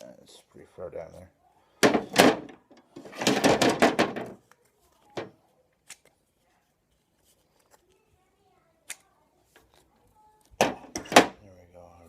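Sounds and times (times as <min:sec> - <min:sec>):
knock: 0:03.2 - 0:04.4.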